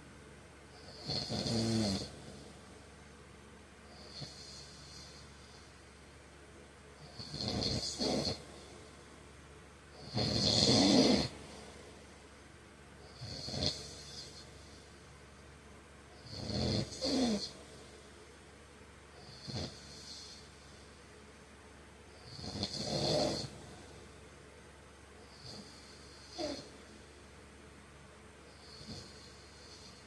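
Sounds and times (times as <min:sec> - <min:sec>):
man snoring: 0:00.8 - 0:02.5, 0:04.0 - 0:05.2, 0:07.0 - 0:08.5, 0:10.0 - 0:11.4, 0:13.1 - 0:14.5, 0:16.2 - 0:17.6, 0:19.2 - 0:20.5, 0:22.2 - 0:23.6, 0:25.3 - 0:26.7, 0:28.6 - 0:30.0.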